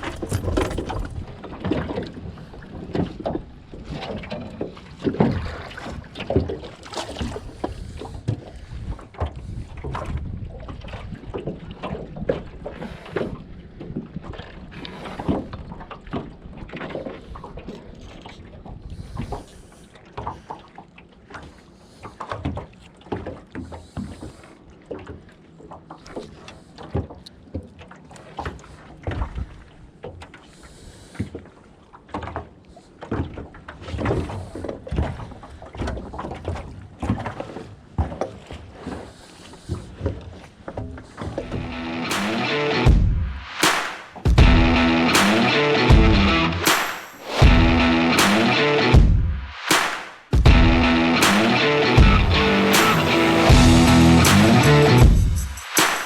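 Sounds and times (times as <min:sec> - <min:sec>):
wind rumble on microphone: 0:07.2 - 0:12.6.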